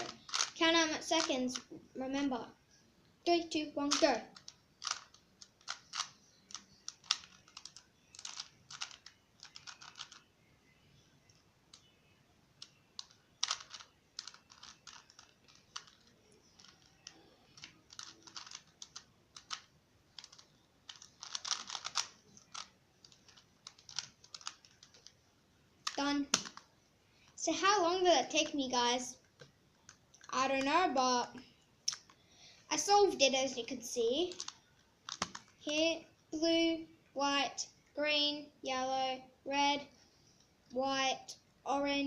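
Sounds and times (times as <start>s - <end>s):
puzzle cube clicking: 0.0s - 1.7s, 3.9s - 10.3s, 12.6s - 25.2s, 25.8s - 26.8s, 34.2s - 35.8s.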